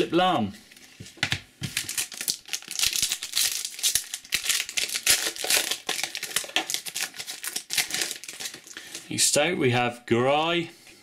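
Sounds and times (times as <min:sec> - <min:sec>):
plastic wrapper tearing and crinkling: 0:01.6 - 0:09.1.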